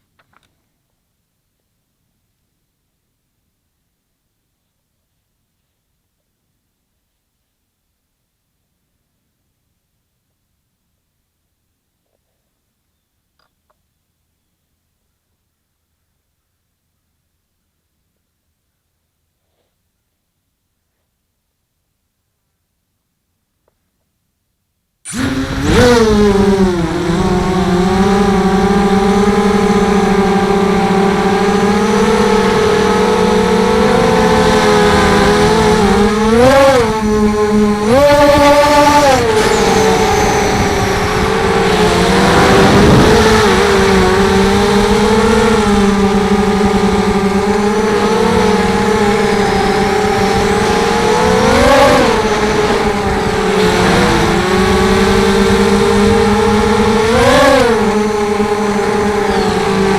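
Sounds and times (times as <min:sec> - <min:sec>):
quadcopter motors whining: 0:25.1 - 0:59.9.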